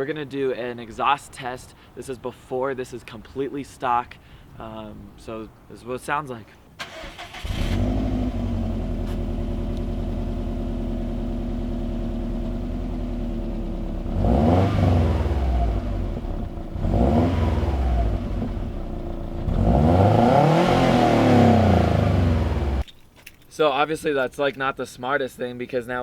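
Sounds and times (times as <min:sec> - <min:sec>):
car engine starting and revving: 0:06.8 - 0:22.8.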